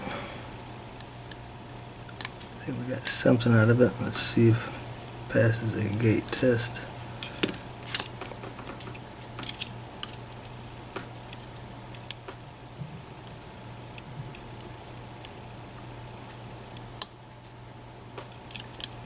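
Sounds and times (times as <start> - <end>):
lock picks clicking in a lock: 7.2 - 10.5, 18.4 - 19.0.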